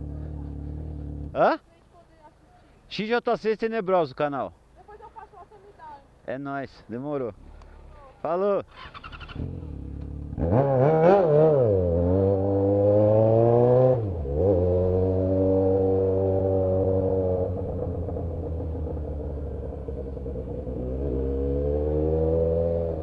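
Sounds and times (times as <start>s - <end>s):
motorcycle engine revving: 0.0s - 1.4s, 8.7s - 23.0s.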